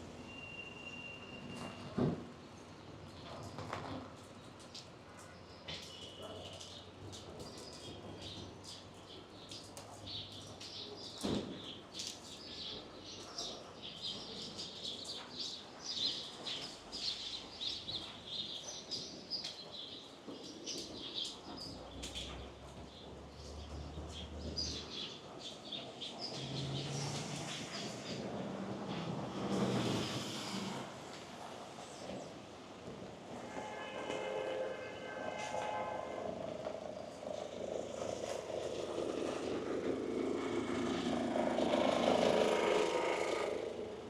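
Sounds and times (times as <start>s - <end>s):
small birds chirping: 4.4s - 28.3s.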